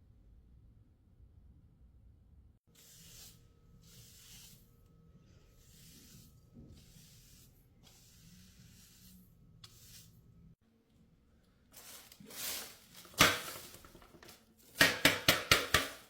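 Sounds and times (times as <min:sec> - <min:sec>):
soft hissing cleaning strokes: 0:02.8 - 0:10.6, 0:11.7 - 0:14.3.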